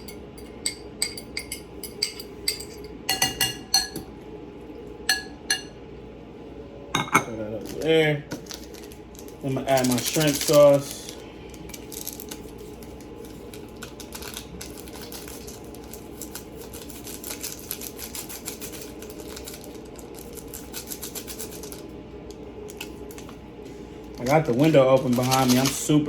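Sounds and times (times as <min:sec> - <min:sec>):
steady low hum: 0:00.0 - 0:26.0
plastic packet crinkling: 0:08.4 - 0:21.8, 0:24.1 - 0:25.9.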